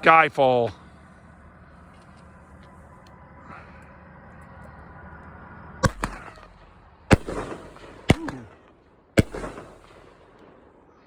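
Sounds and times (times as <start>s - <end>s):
firework bangs: 5.8s - 10.9s.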